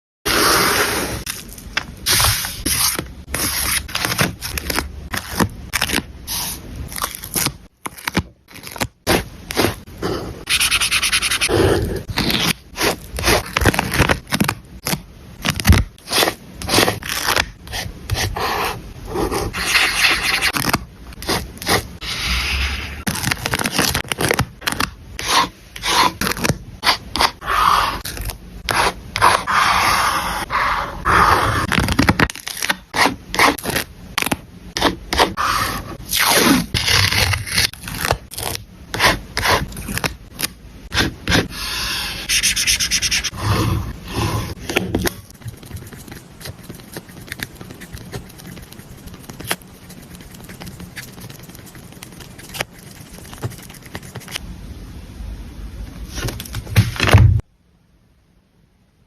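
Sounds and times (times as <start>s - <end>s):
paper rubbing and scraping: 0.3s - 7.3s, 8.6s - 14.5s, 15.7s - 33.8s, 40.9s - 54.4s.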